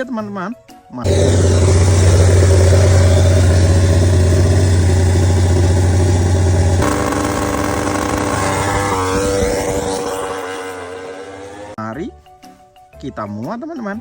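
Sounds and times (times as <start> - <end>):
motorcycle engine running: 1.1 - 11.8.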